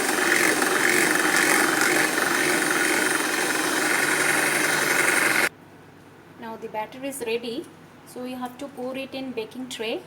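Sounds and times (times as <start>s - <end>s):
electric mixer whirring: 0.0s - 5.5s.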